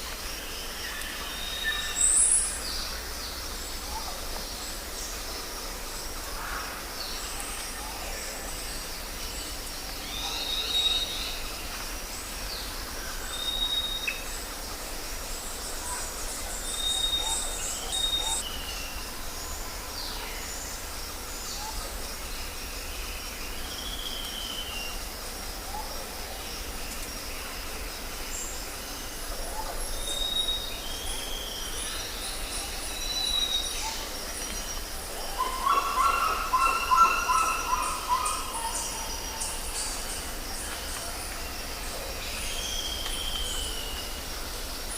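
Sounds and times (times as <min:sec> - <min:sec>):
birds whistling and calling: 0:16.7 - 0:18.7, 0:35.3 - 0:39.9, 0:42.3 - 0:44.0.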